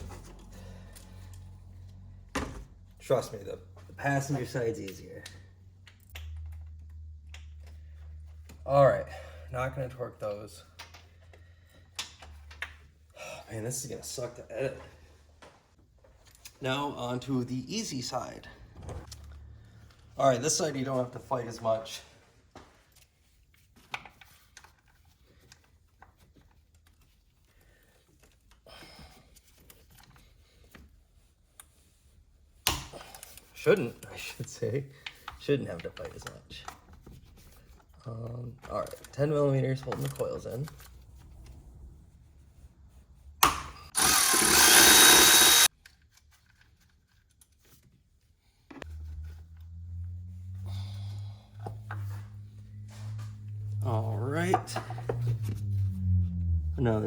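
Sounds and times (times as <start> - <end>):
power tool running: 43.9 - 45.7
steady low hum: 48.9 - 57.0.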